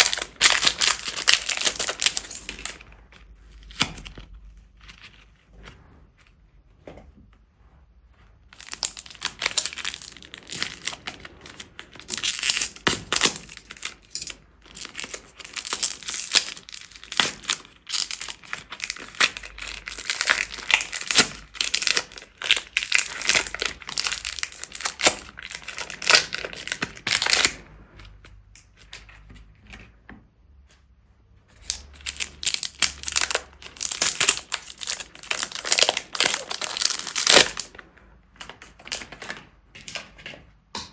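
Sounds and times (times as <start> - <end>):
plastic bags crinkling: 0.0 - 4.2, 8.5 - 27.6, 31.6 - 37.8, 38.4 - 39.5.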